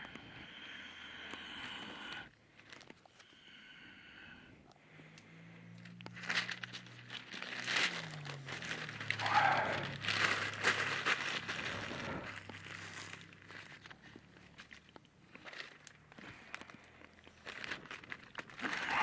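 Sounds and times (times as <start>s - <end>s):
paper crumpling: 6.2s - 19.0s.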